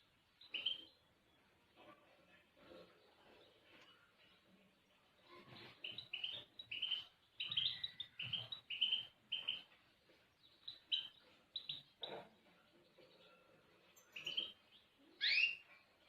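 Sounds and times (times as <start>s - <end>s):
goldfinch chirping and twittering: 0.4s - 1.0s, 5.4s - 9.8s, 10.4s - 12.2s, 12.8s - 15.8s.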